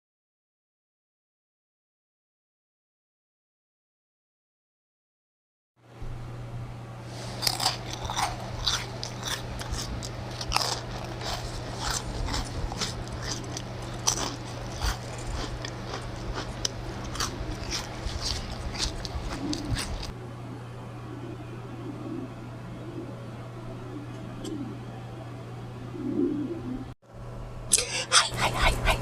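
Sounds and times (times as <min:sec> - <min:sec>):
steady low hum: 0:05.8 - 0:29.0
crunchy chewing: 0:07.2 - 0:20.2.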